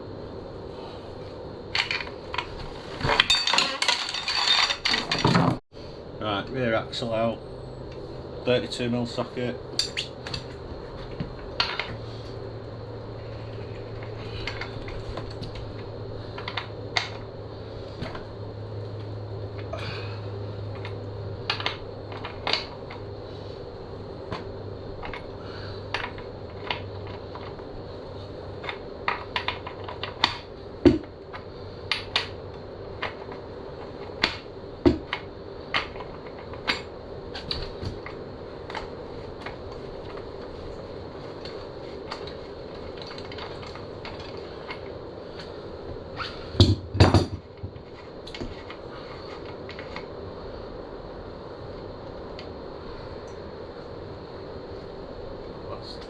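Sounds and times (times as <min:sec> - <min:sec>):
steady low hum: 0:00.0 - 0:56.0
hand tools clinking on metal parts: 0:03.1 - 0:05.4.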